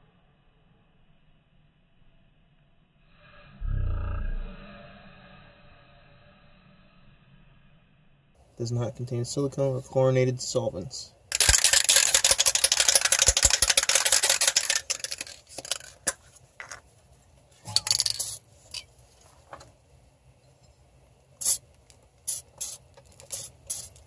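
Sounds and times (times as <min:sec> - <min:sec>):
aerosol can spraying: 0:11.3 - 0:15.9, 0:21.4 - 0:21.6, 0:22.2 - 0:24.0.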